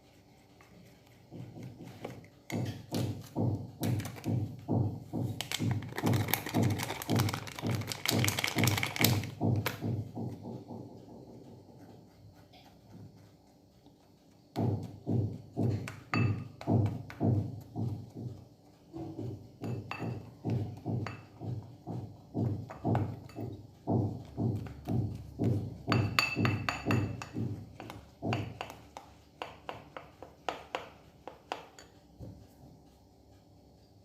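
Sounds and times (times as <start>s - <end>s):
utensil stirring in a bowl: 0.0s - 32.7s
utensil knocking against bowl: 1.3s - 12.0s, 14.5s - 32.4s.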